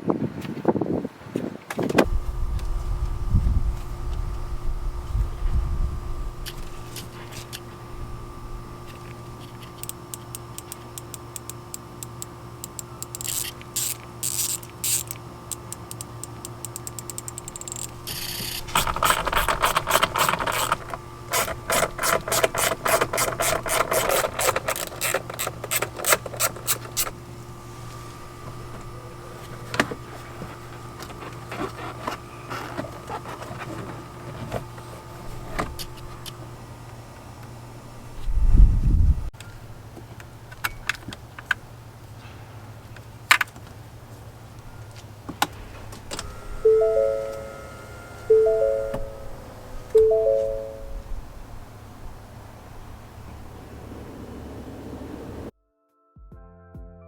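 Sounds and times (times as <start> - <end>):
steady low hum: 2.0 - 55.5
ratchet clicking: 9.7 - 27.1
tool and plastic handling scrapes: 17.7 - 27.1, 29.5 - 35.7.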